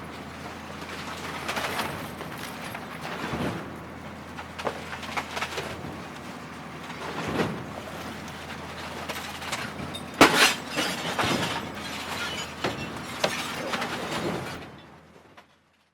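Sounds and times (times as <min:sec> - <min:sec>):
glass and plastic crunching: 0:09.2 - 0:14.0.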